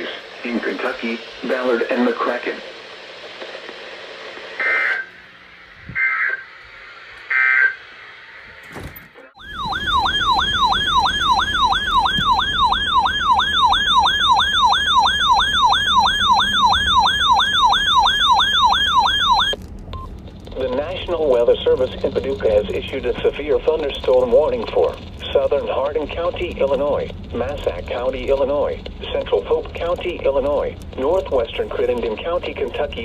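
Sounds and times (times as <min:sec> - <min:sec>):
electronic yelp siren: 0:05.8 - 0:08.6, 0:09.2 - 0:19.6.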